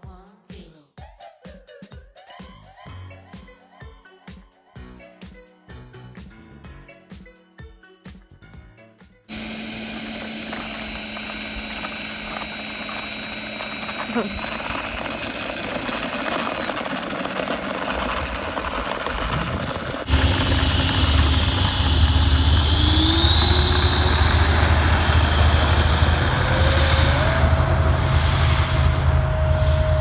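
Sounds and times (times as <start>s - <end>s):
electric ducted fan whining: 9.3s - 30.0s
low rumble: 14.4s - 30.0s
hiss: 20.0s - 30.0s.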